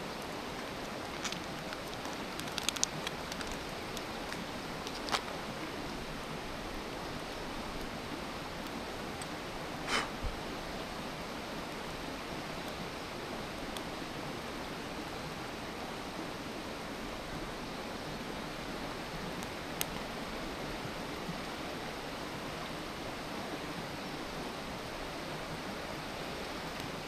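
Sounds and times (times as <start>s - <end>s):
steady fire hiss: 0.0s - 27.0s
campfire crackling pops: 0.5s - 5.4s, 19.4s - 20.1s.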